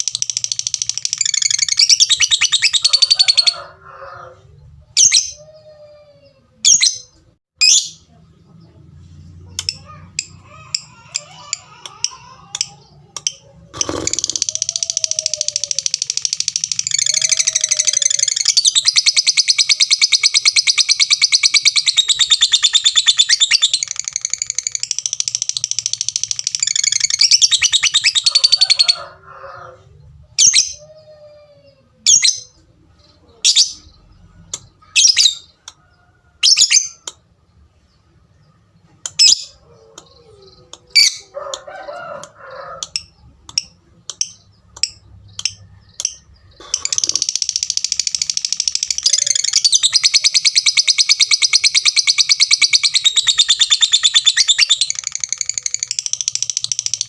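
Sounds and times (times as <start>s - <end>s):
bird fast high chattering trill: 13.4s - 29.0s, 42.9s - 57.0s.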